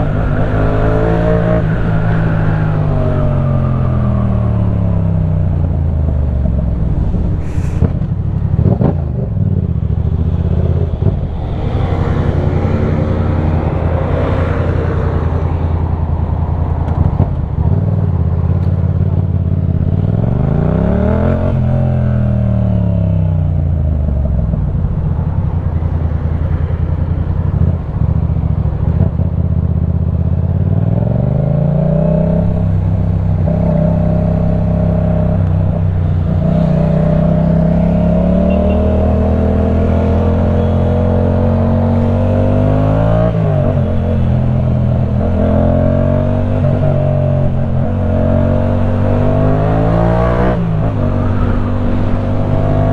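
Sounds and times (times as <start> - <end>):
motorcycle engine revving: 0.0 - 52.9.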